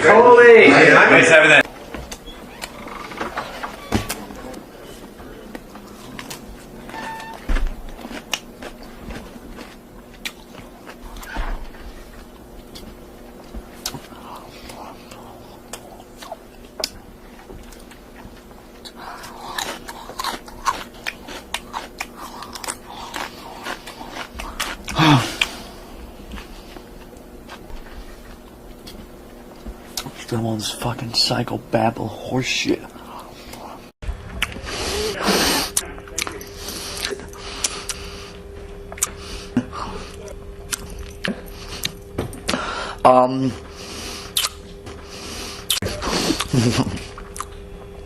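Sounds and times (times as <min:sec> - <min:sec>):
person chewing food noisily: 0:04.1 - 0:30.2, 0:35.7 - 0:42.6, 0:43.7 - 0:48.0.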